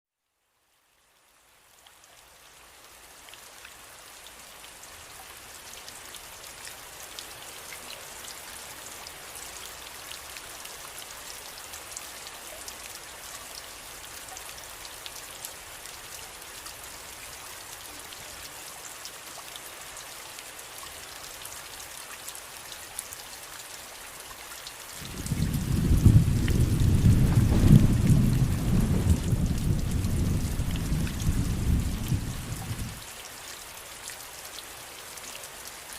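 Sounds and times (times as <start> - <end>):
rain pattering: 0.8 - 35.9
low rumble of thunder: 25.0 - 33.0.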